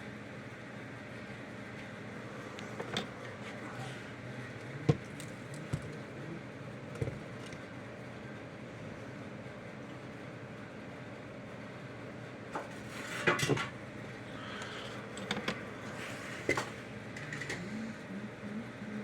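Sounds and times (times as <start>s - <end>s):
background hum: 12.3s - 19.0s.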